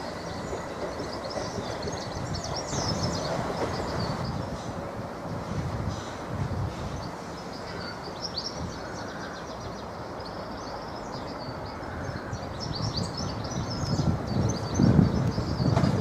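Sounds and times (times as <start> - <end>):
small birds chirping: 0.1 - 4.6.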